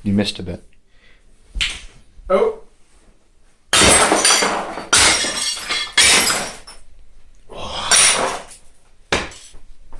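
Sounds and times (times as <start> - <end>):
shards scattering and rattling: 3.7 - 6.8, 7.9 - 8.7
sledgehammer smashing teapot: 3.7 - 6.8, 7.9 - 8.6.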